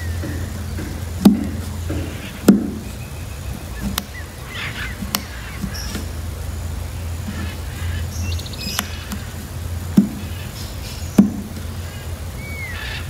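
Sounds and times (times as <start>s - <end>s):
sharp thumps: 0.0s - 4.2s, 4.9s - 6.2s, 8.7s - 10.5s, 11.2s - 11.7s
faint bird chirps: 0.0s - 6.2s, 6.9s - 9.4s, 10.1s - 13.0s
steady low hum: 0.0s - 13.0s.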